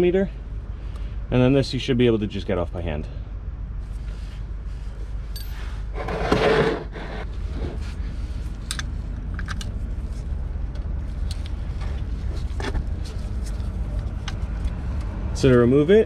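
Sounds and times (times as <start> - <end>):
steady low hum: 0.0 - 16.0
rough scrape: 5.5 - 8.1.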